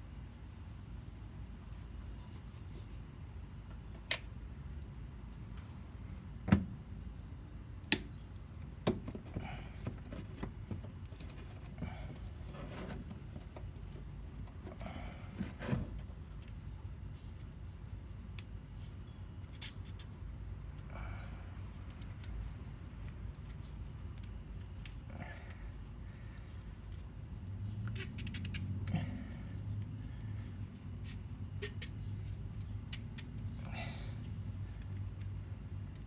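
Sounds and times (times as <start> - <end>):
rustling: 9.2 - 20.3.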